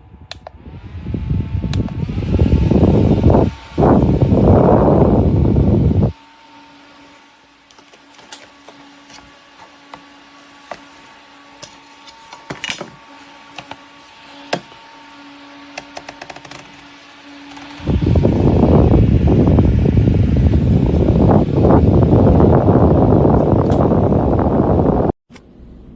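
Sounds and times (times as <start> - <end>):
fan airflow rushing over microphone: 0.0 - 25.9
faint steady hum: 17.8 - 25.9.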